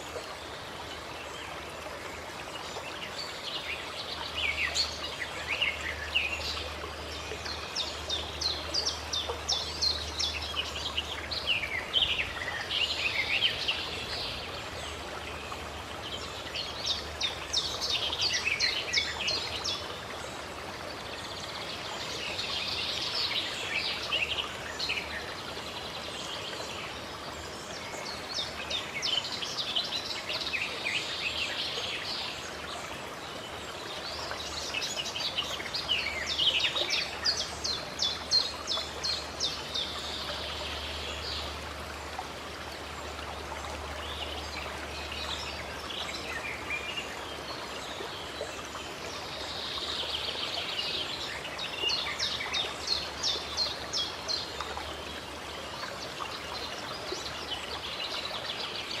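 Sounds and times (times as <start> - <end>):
flowing water rushing: 0.0 - 59.0.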